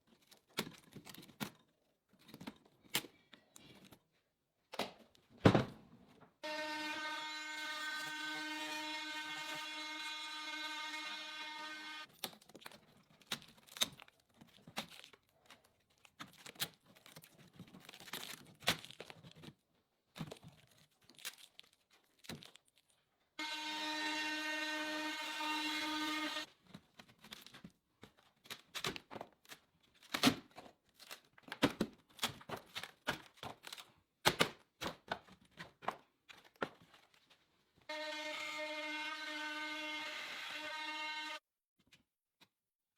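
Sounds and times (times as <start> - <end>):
small power tool whining: 6.4 - 12.1, 23.4 - 26.5, 37.9 - 41.4
wood tearing: 12.1 - 19.5.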